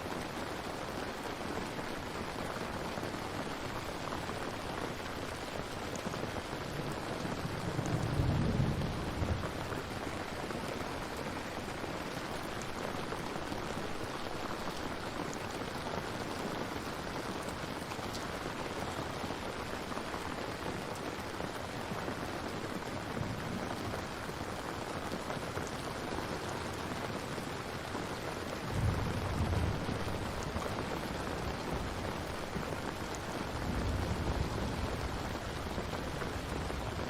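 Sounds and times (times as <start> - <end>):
steady rain falling: 0.0 - 37.0
low rumble of thunder: 6.6 - 10.0, 28.6 - 37.0.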